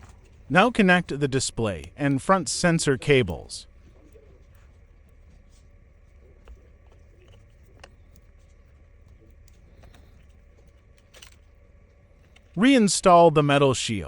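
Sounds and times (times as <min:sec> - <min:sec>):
low steady hum: 0:00.0 - 0:14.0
faint clicks of small parts: 0:03.2 - 0:12.6.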